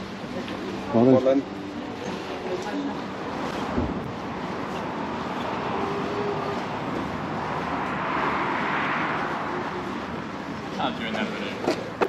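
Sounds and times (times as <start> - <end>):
vehicle passing: 2.9 - 11.8.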